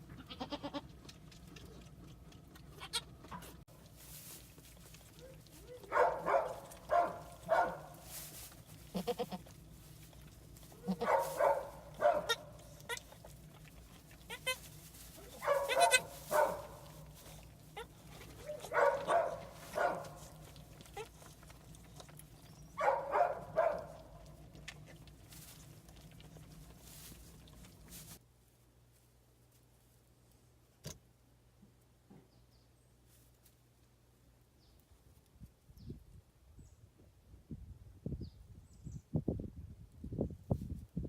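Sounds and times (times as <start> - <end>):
goat bleating: 0.0 - 0.9, 2.6 - 3.6, 8.8 - 9.6, 10.7 - 13.4, 14.1 - 16.9, 17.6 - 19.1, 20.1 - 21.3.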